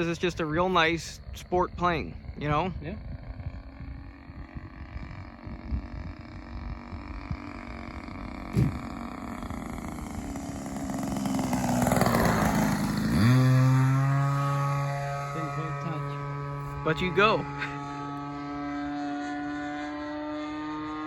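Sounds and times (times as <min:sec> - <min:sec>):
model airplane engine: 0:00.0 - 0:21.0
brief knock: 0:08.5 - 0:08.8.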